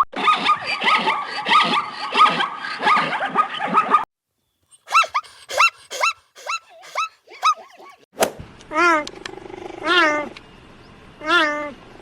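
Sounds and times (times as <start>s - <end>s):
animal yelping and barking calls: 0.2s - 4.1s, 4.7s - 8.1s, 8.8s - 10.4s, 11.2s - 11.8s.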